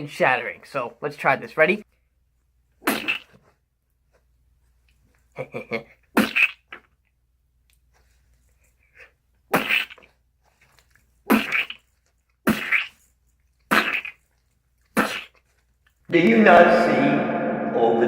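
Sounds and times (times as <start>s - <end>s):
mouth splattering sounds: 2.8s - 3.3s, 6.2s - 6.9s, 9.5s - 10.1s, 11.2s - 13.0s, 13.6s - 15.5s.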